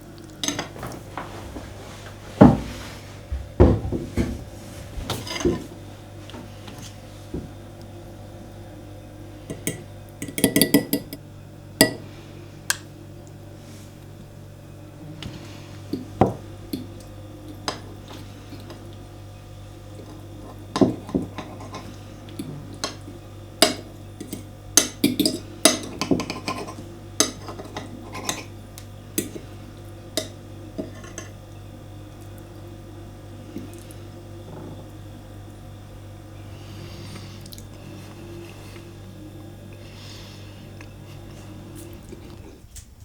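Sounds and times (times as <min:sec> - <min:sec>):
steady low hum: 0:00.0 - 0:43.0
dishes and cutlery clinking: 0:00.4 - 0:01.7, 0:05.0 - 0:05.7.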